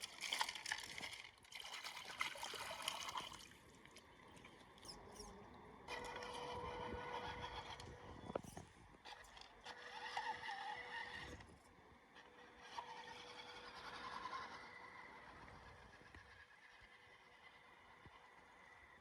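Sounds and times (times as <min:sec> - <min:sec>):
toy car electric motor whining: 0:04.8 - 0:11.6, 0:12.2 - 0:19.0.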